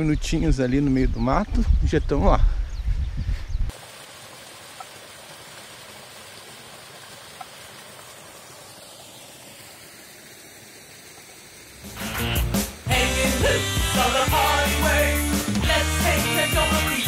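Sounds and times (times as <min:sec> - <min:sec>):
waterfall rushing: 0:03.7 - 0:17.0.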